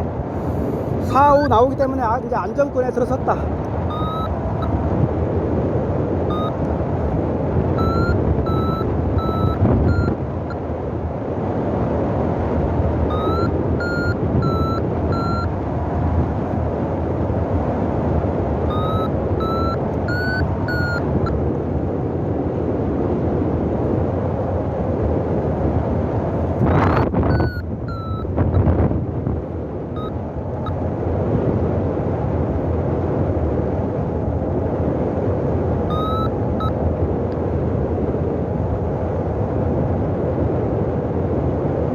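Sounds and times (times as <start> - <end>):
wind buffeting microphone: 0.0 - 41.9
variometer short beeps: 3.8 - 4.8, 6.3 - 6.8, 7.7 - 10.6, 13.0 - 15.5, 18.7 - 21.4, 26.7 - 28.6, 30.0 - 30.8, 35.9 - 36.8.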